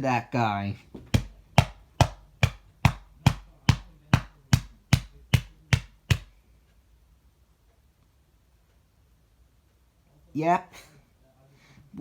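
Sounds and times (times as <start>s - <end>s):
sharp knocks: 1.0s - 6.3s.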